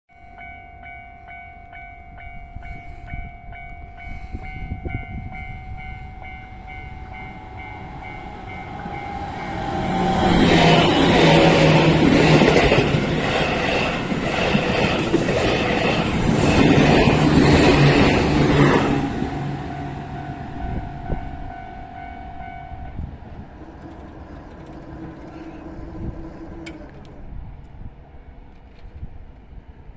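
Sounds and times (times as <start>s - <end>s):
electric train rumbling: 0.1s - 29.9s
level crossing alarm ringing: 0.3s - 12.8s.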